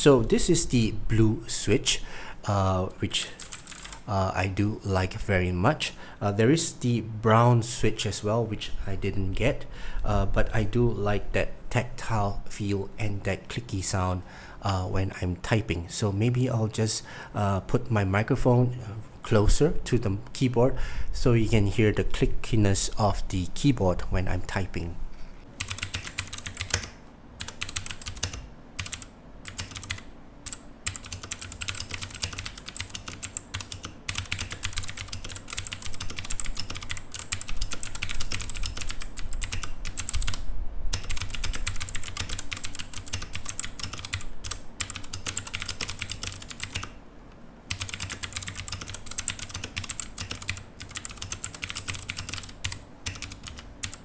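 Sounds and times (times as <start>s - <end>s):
mechanical keyboard typing clicks: 3.4s - 4.0s, 25.6s - 47.0s, 47.7s - 54.0s.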